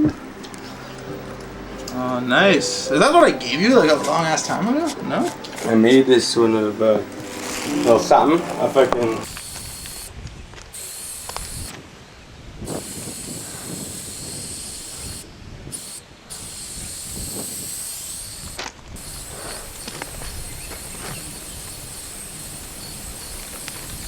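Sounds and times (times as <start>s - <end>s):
spray paint can hissing: 9.2s - 10.1s, 10.7s - 11.7s, 12.7s - 24.0s.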